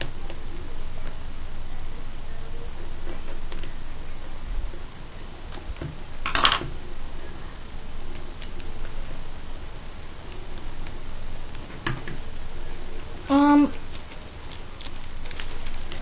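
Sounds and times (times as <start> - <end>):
plastic crinkle: 13.7 - 16.0
fingers scratching plastic wrap: 13.8 - 16.0.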